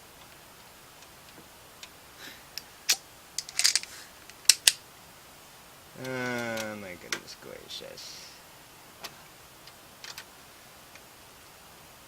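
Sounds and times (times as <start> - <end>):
plastic parts clattering: 2.9 - 4.8
plastic parts clicking and knocking: 2.9 - 4.8, 9.0 - 10.3.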